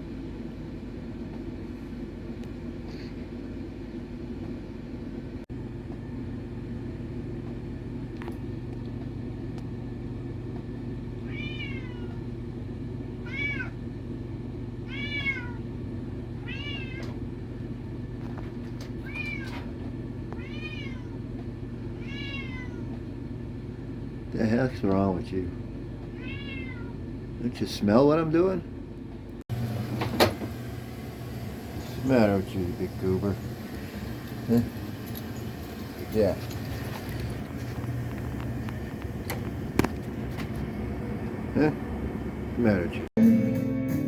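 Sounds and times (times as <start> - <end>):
cat meowing: 11.2 - 12.2, 13.2 - 13.8, 14.9 - 15.6, 16.4 - 17.2, 19.0 - 19.6, 20.4 - 21.2, 22.0 - 23.0, 26.2 - 27.0
low hum: 28.6 - 43.1.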